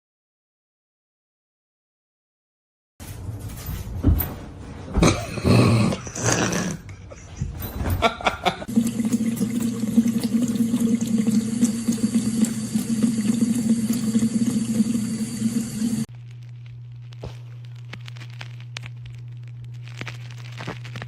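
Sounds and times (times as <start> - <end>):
tap water running: 8.6 - 16.1.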